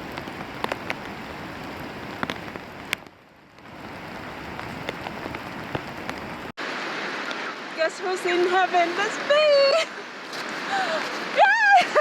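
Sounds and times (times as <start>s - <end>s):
raindrops ticking on a surface: 0.0s - 6.6s
heavy rain hissing: 3.7s - 12.0s.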